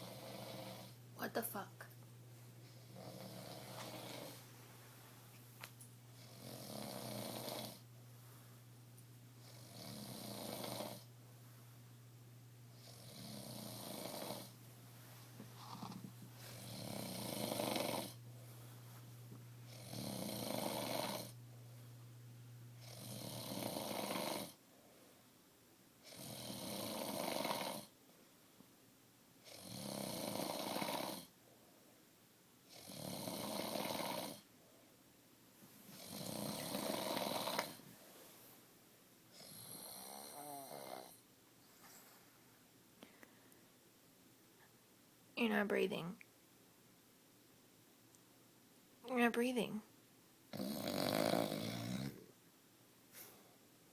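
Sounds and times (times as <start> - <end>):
man snoring heavily: 0.0 - 1.0, 2.8 - 4.4, 6.2 - 7.8, 9.4 - 11.1, 12.8 - 14.6, 16.6 - 18.2, 19.7 - 21.4, 22.8 - 24.6, 26.1 - 27.9, 29.5 - 31.3, 32.7 - 34.4, 36.0 - 37.8, 39.4 - 41.2, 50.5 - 52.3
low steady hum: 0.0 - 23.0.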